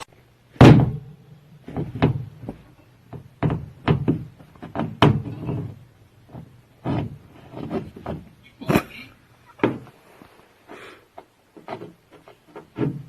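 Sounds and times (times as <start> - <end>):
knocks and thumps: 0.6 - 8.4, 9.6 - 10.0, 11.2 - 13.0.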